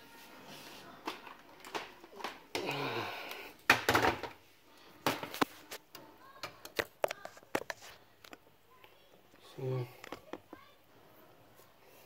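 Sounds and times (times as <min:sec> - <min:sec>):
plastic clatter: 0:01.0 - 0:02.6, 0:03.7 - 0:04.4.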